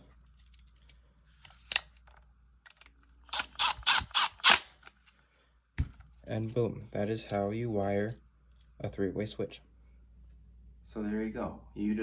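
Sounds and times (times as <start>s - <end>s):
screwdriver clicking on screw: 2.7s - 4.7s.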